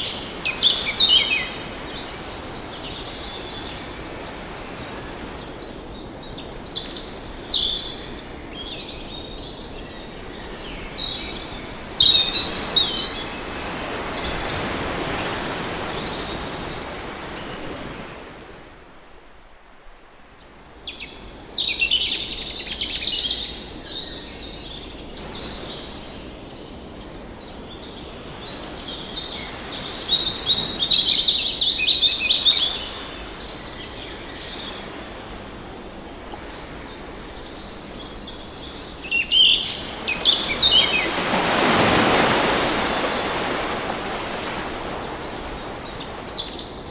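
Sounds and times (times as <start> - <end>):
ocean waves: 0.0 - 20.2, 23.4 - 46.9
birds chirping: 20.7 - 46.9.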